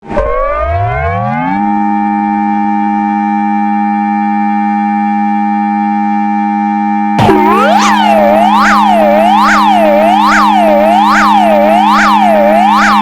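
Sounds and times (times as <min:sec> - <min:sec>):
alarm tones steady chord: 0:07.2 - 0:13.0.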